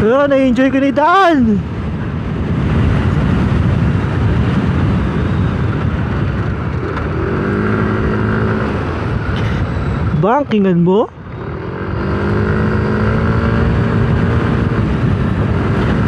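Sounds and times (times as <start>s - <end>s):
wind rumble on microphone: 0.0s - 16.0s
scooter engine running: 4.6s - 16.0s.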